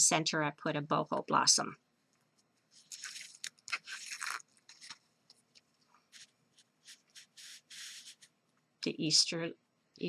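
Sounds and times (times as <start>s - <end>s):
paper crinkling and rustling: 2.7s - 5.0s, 5.6s - 8.3s.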